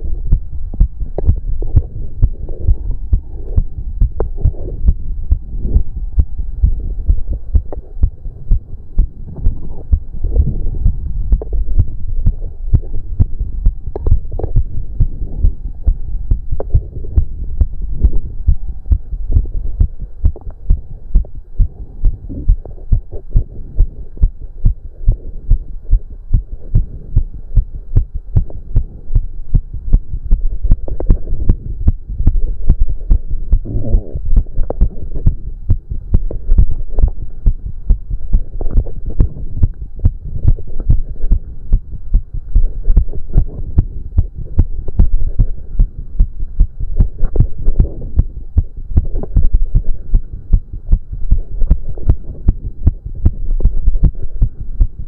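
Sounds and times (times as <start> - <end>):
fast pounding heartbeat: 0.0 - 55.0.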